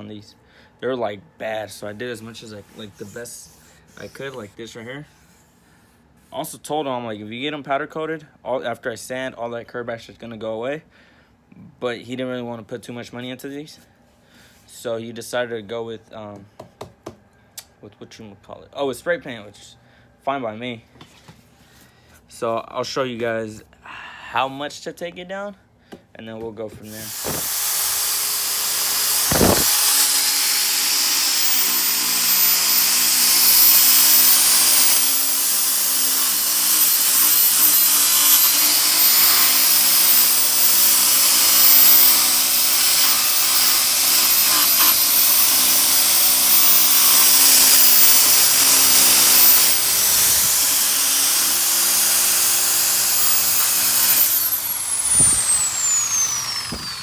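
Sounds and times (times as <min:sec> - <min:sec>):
power sander grinding metal: 0:26.8 - 0:57.0
sander winding down whine: 0:26.9 - 0:57.0.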